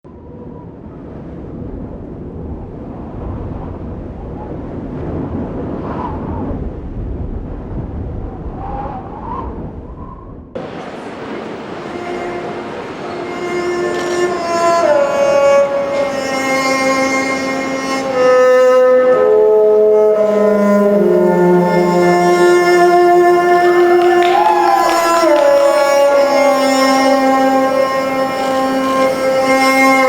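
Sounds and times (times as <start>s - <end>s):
slow instrumental music: 10.6s - 30.0s.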